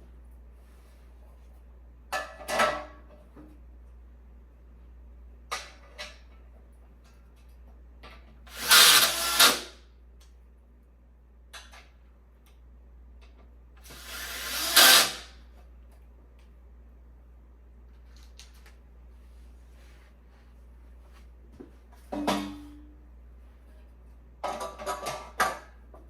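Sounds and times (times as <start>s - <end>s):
power drill driving screws: 8.5s - 9.8s, 13.8s - 15.3s.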